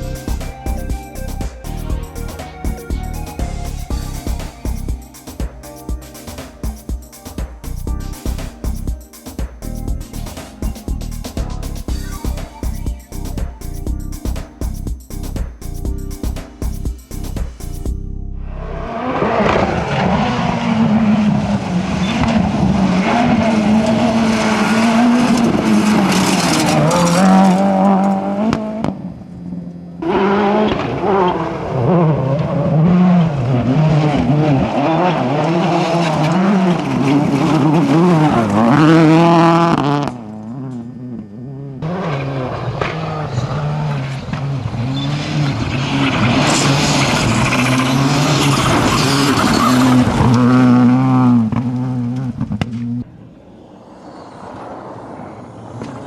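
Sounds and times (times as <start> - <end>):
rally car engines revving: 18.5 - 53.1
tyre squeal: 41.8 - 51.7.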